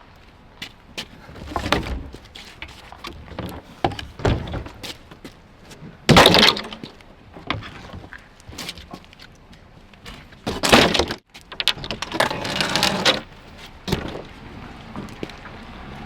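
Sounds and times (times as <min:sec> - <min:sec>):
debris thuds and clatters: 0:01.3 - 0:04.8, 0:06.1 - 0:08.2, 0:10.4 - 0:15.4.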